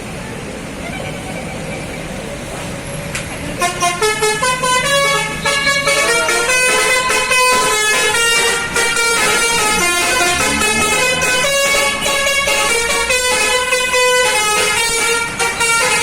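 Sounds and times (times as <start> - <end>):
musical bus horn playing a tune: 3.6 - 16.0.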